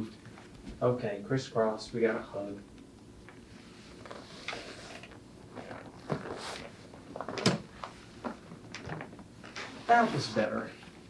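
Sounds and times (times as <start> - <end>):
spinal joints cracking: 5.0 - 9.7
body rustling on table: 5.5 - 10.4.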